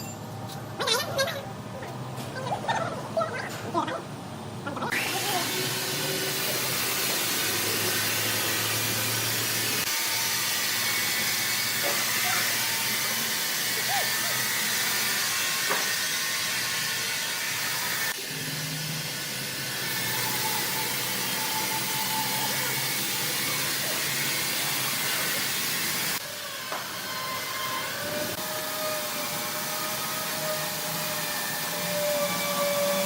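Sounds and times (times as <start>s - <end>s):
hissing machine noise: 3.1s - 33.0s.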